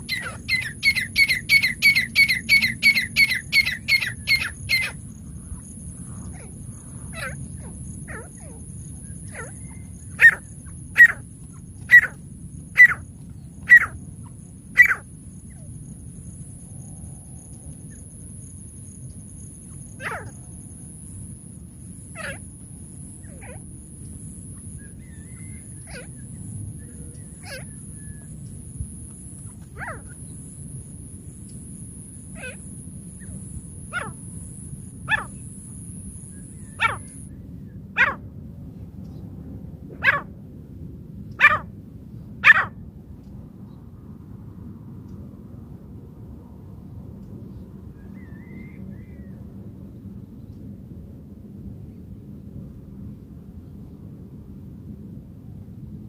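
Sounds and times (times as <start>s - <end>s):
francolin calls: 0.0s - 15.7s, 21.8s - 37.3s.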